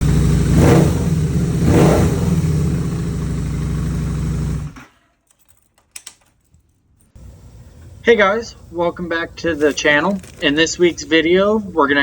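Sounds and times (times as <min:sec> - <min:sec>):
motorcycle engine revving: 0:00.0 - 0:04.9.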